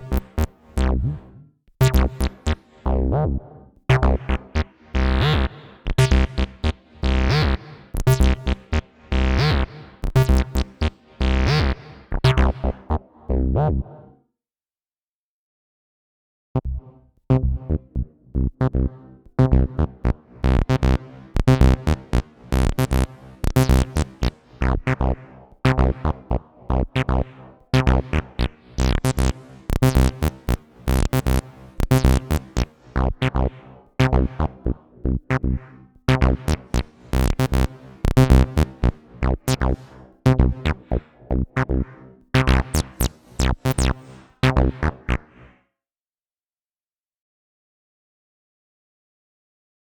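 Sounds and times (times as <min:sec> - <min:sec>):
synthesizer acid bassline: 0:00.0 - 0:13.9, 0:16.6 - 0:45.6.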